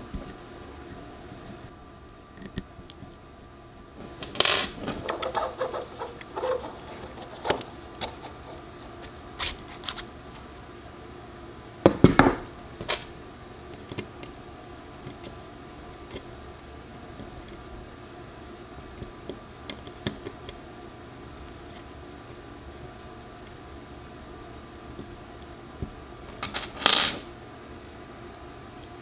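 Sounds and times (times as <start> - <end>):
small hard parts clicking: 4.0 - 9.1.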